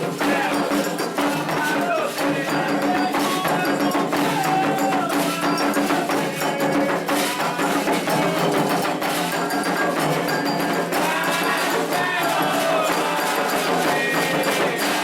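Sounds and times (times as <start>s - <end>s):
drums beating: 0.0s - 15.0s
struck bell: 0.0s - 15.0s
voices singing: 0.0s - 15.0s.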